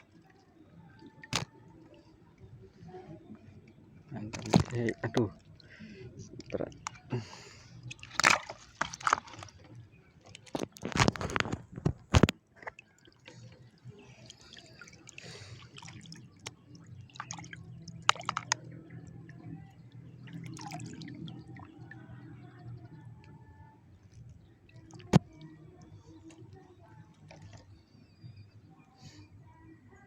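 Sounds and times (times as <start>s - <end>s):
water splashing: 0.0s - 11.5s, 12.2s - 19.5s, 20.2s - 22.8s, 24.1s - 27.8s
water dripping: 12.6s - 23.4s.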